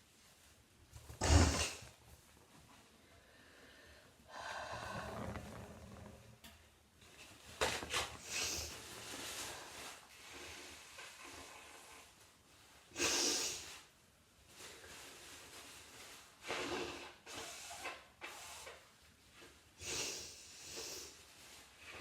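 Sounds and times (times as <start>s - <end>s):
person blowing nose: 1.2s - 2.0s, 12.9s - 13.8s, 19.8s - 21.2s.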